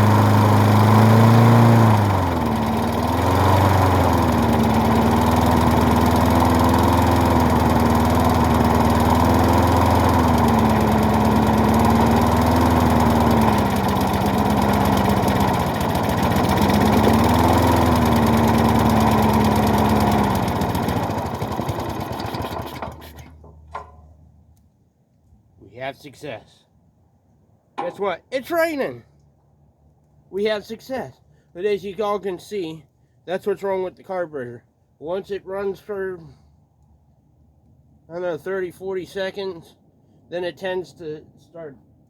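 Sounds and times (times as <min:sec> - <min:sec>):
lawnmower engine surging: 0:00.0 - 0:24.0.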